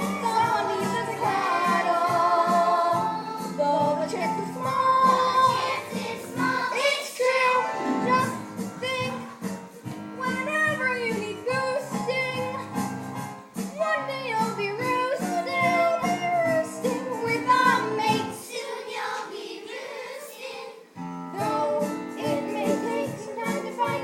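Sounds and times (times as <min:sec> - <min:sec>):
instrumental backing: 0:00.0 - 0:18.5.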